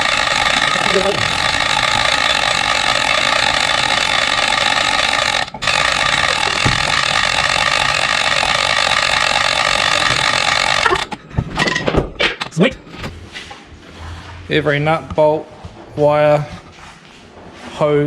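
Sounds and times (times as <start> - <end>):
loud hissing machine noise: 0.0 - 11.1.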